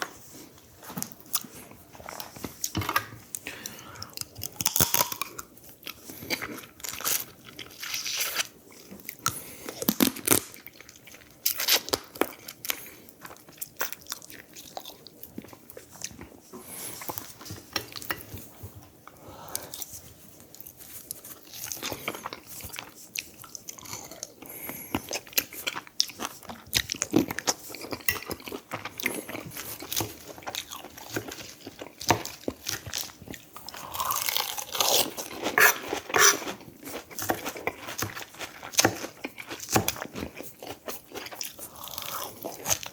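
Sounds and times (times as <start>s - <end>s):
person chewing crunchy food: 0.3s - 42.9s.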